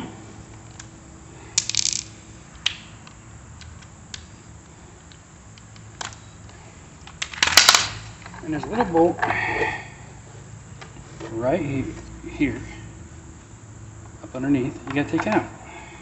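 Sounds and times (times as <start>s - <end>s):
metal tools clicking and clinking: 1.6s - 2.1s
ratchet wrench rattling clicks: 1.6s - 4.3s.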